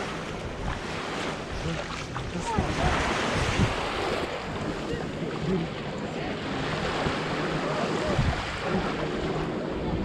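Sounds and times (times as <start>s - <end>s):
faint voices: 4.4s - 10.0s.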